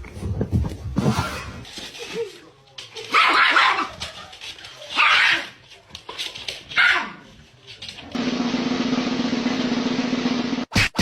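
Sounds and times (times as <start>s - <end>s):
dog barking: 3.1s - 3.9s, 5.0s - 5.6s, 6.8s - 7.2s.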